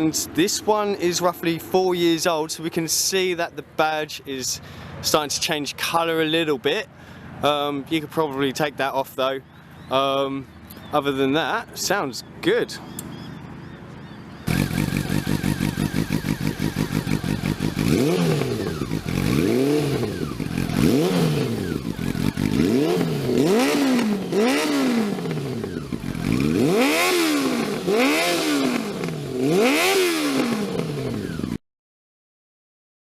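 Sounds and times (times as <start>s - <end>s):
motorcycle engine idling and revving: 13.0s - 31.6s.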